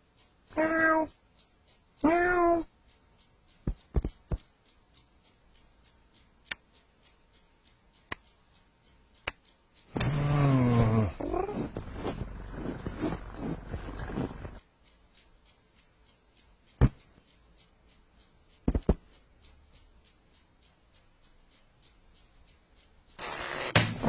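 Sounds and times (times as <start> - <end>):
sharp clicks: 0.0 - 24.0
cat meowing: 0.5 - 1.1, 2.0 - 2.7
rustling: 10.0 - 16.2.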